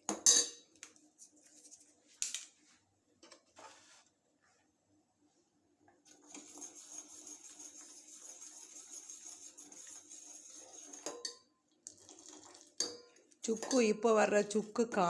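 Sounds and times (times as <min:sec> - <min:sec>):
milk boiling hiss: 0:06.0 - 0:15.0.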